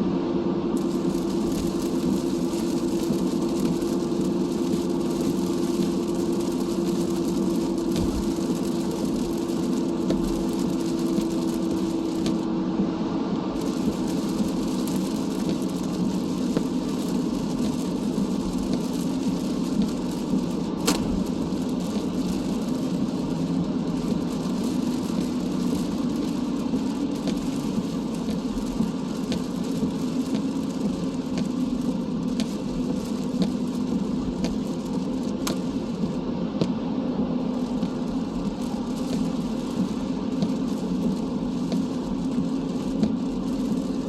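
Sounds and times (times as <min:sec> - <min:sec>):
car engine and road drone: 0:00.0 - 0:44.0
tyres hissing on wet road: 0:00.8 - 0:12.5, 0:13.5 - 0:44.0
sharp ticks: 0:35.4 - 0:35.7.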